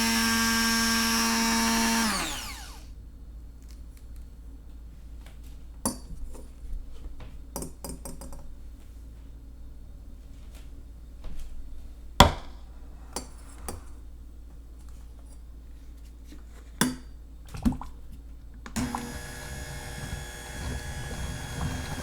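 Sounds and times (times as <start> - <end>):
hand blender motor whining: 0.0 - 2.9, 18.8 - 22.0.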